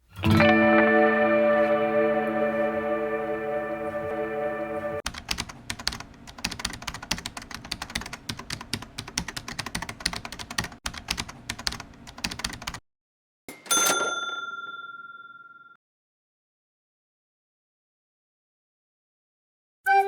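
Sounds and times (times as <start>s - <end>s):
rapid keyboard typing: 5.1s - 12.8s
bright bell-like ding: 13.5s - 15.8s.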